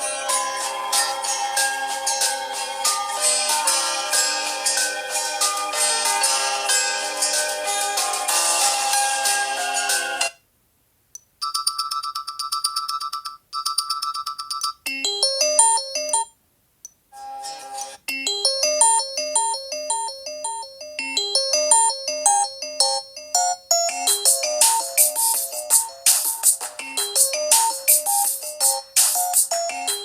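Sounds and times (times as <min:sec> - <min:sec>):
bouncy melodic alarm tone: 0:14.9 - 0:16.3, 0:18.1 - 0:30.0
short phone melody: 0:17.3 - 0:30.0.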